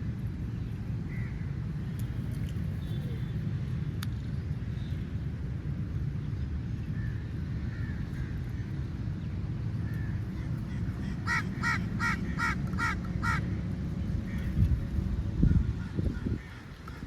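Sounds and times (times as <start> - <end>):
steady low rumble: 0.0 - 17.0
crow cawing: 10.4 - 13.4.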